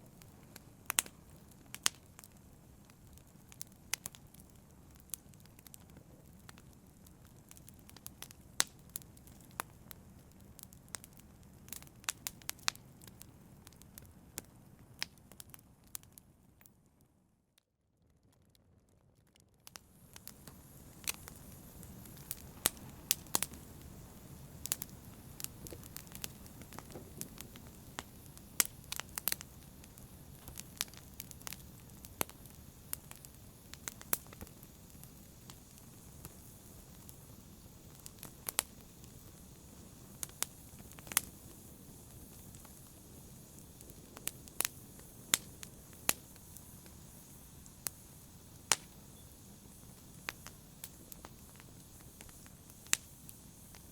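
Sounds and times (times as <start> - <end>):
crackles and pops of burning logs: 0.0 - 17.1, 18.1 - 53.9
low rush of flames: 19.6 - 53.9.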